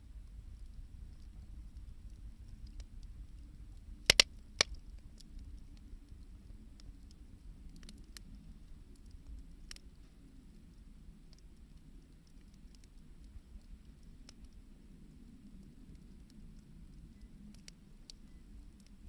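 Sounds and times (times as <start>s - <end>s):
low steady rumble: 0.0s - 19.0s
wood fire crackling: 0.0s - 19.0s
loud sharp pops: 4.0s - 4.8s.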